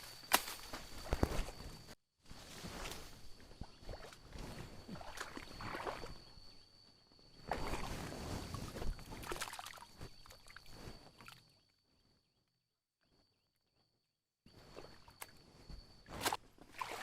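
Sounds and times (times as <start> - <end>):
faint high whine: 0.0 - 17.0
water sloshing and splashing: 2.8 - 6.4, 7.4 - 11.5, 16.0 - 17.0.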